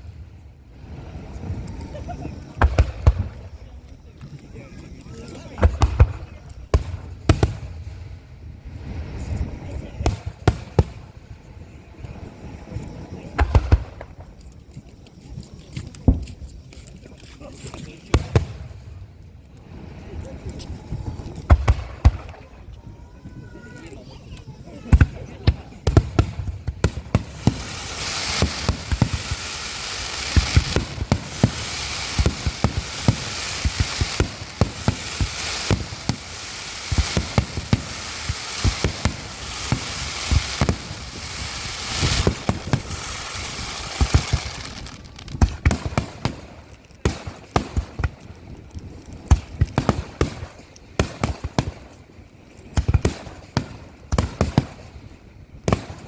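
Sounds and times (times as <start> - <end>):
fireworks crackle: 0.0 - 56.0
firework shell bursts: 25.9 - 47.9.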